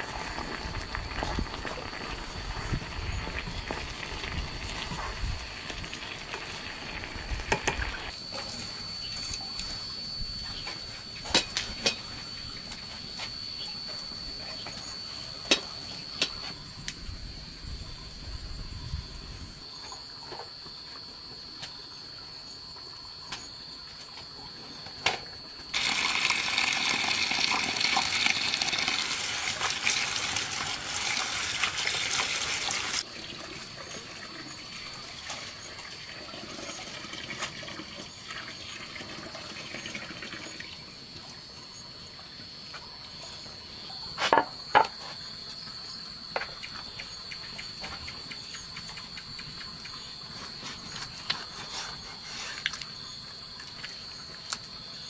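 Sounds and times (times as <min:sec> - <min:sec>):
high-pitched insect trill: 0:08.1 - 0:55.0
water running from a tap: 0:25.7 - 0:40.8.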